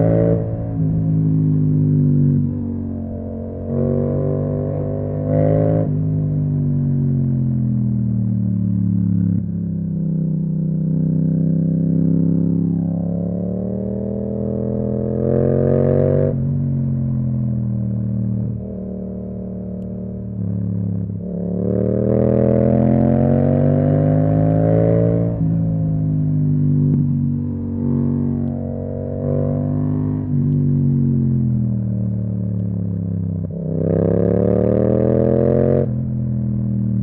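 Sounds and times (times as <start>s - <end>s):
motorcycle engine accelerating: 0.0s - 37.0s.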